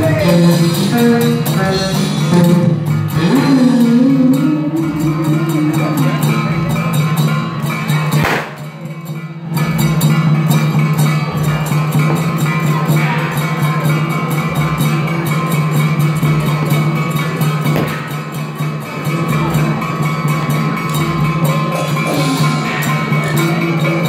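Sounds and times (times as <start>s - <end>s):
sharp crack: 8.2s - 8.8s.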